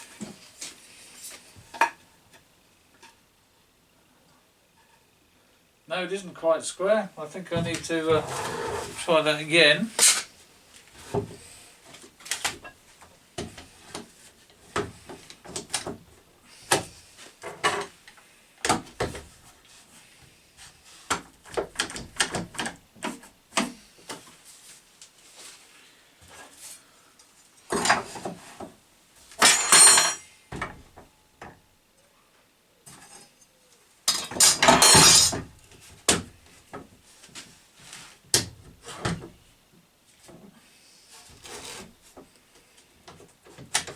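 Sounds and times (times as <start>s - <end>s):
short noisy bursts: 8.1s - 9.1s.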